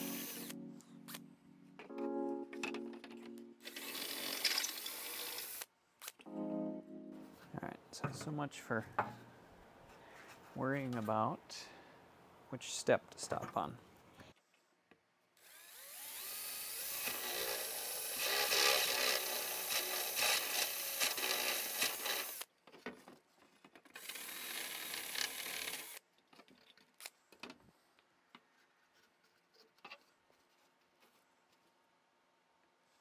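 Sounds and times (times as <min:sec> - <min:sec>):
power drill whining and grinding: 0:00.0 - 0:00.6, 0:03.6 - 0:05.7, 0:15.4 - 0:22.5, 0:24.0 - 0:26.0.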